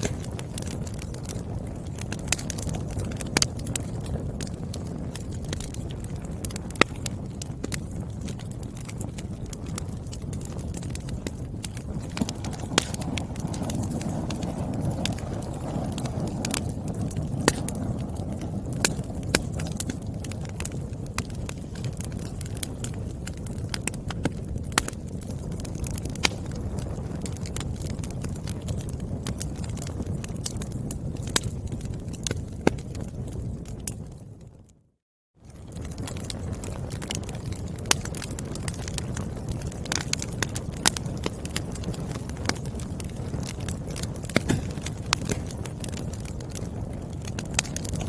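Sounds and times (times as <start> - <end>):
firewood crackling and popping: 0.0 - 48.0
low rumble of flames: 0.0 - 48.0.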